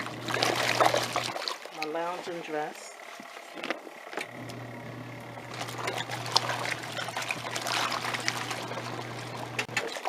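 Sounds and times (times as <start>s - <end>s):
washing machine motor hum: 0.0s - 10.0s
water sloshing and churning: 0.0s - 10.0s.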